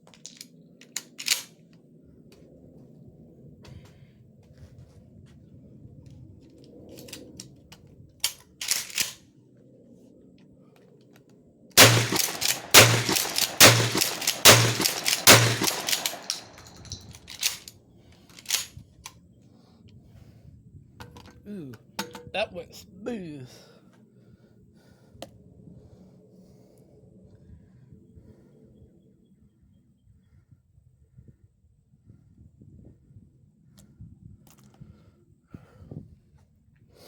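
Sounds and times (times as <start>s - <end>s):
shotgun action clicks: 0.4s - 1.5s, 8.2s - 9.2s, 11.8s - 18.7s
shotgun shots: 11.8s - 17.6s.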